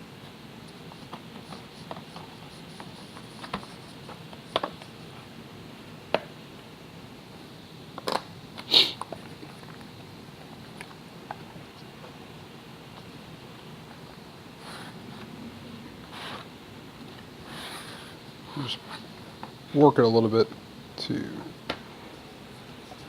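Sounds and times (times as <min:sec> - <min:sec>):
plastic parts clicking and tapping: 0:04.5 - 0:04.8.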